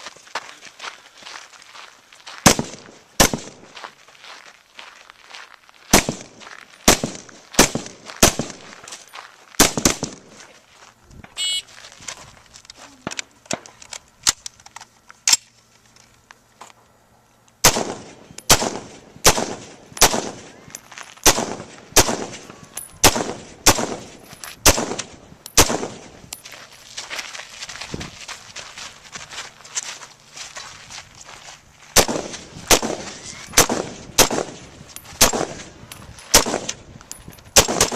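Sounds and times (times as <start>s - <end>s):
rifle shots: 2.4s - 3.7s, 5.9s - 8.7s, 9.6s - 10.4s, 17.6s - 20.5s, 21.2s - 26.2s, 32.0s - 36.9s, 37.6s - 37.9s.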